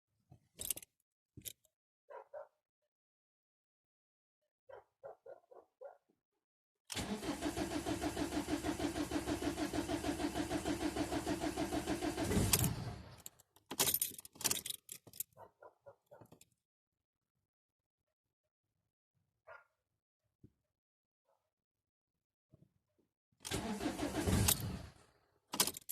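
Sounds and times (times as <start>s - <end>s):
dog barking: 2.1s - 2.6s, 4.7s - 6.1s, 15.4s - 16.3s, 19.4s - 19.8s
diesel engine cranking on starter: 6.9s - 13.3s, 23.4s - 25.8s.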